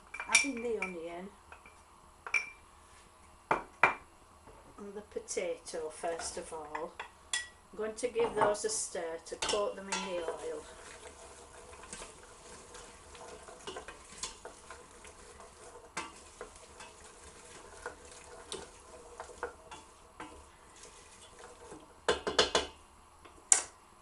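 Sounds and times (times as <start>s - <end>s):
vegetables sizzling in a pan: 8.5s - 22.8s
spoon scraping a pan: 9.4s - 21.8s
utensil knocking against pan: 22.1s - 22.8s.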